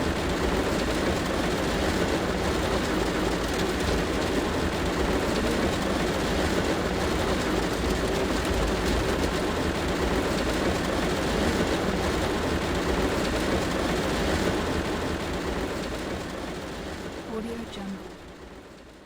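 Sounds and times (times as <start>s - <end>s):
heavy rain on metal car roof: 0.0s - 19.0s.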